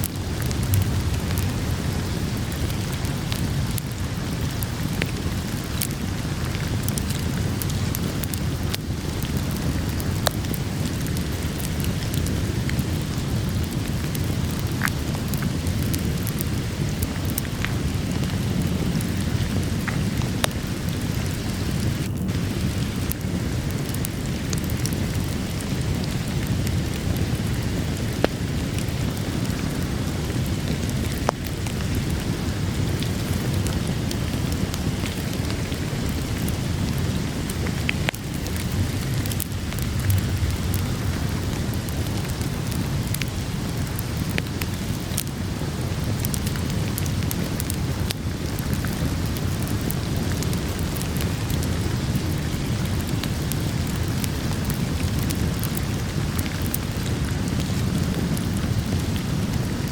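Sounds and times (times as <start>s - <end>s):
heavy rain: 0.0s - 59.9s
wood fire crackling: 0.0s - 59.9s.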